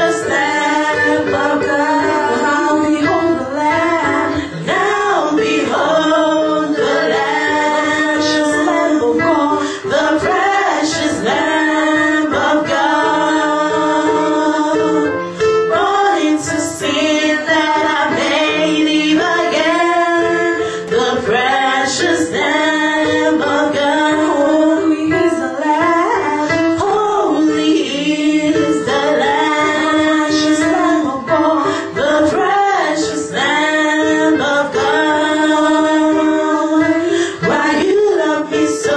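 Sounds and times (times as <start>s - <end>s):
woman singing gospel: 0.0s - 15.1s, 15.7s - 38.9s
group of singers: 0.0s - 38.9s.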